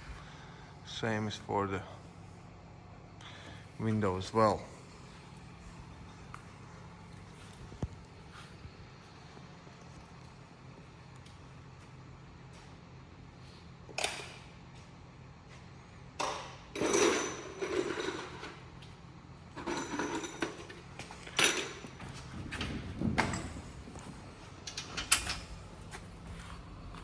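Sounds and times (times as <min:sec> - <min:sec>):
low steady hum: 0:00.0 - 0:27.0
door hardware knocking and rattling: 0:21.4 - 0:25.4.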